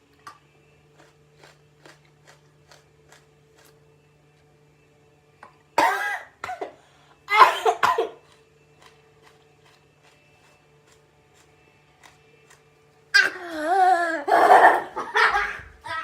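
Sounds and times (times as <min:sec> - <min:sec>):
woman coughing: 0:05.8 - 0:08.2.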